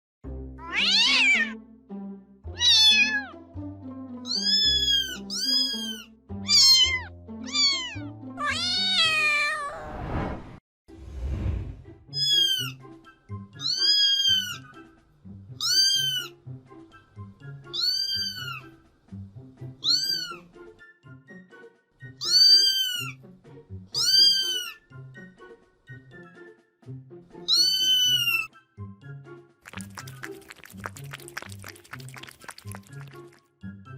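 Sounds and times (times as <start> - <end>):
cat meowing: 0.6 - 1.6, 2.5 - 3.4, 4.2 - 9.9, 12.1 - 12.8, 13.6 - 14.6, 15.6 - 16.3, 17.7 - 18.7, 19.8 - 20.4, 22.2 - 23.2, 24.0 - 24.8, 27.4 - 28.5.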